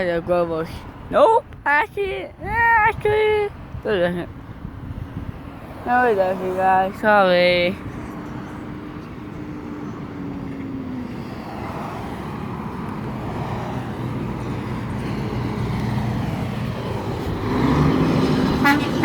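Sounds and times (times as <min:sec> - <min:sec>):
road noise: 0:00.0 - 0:19.0
semi trucks passing by: 0:00.0 - 0:19.0
low truck engine drone: 0:07.4 - 0:19.0
short truck horn honk: 0:18.6 - 0:19.0.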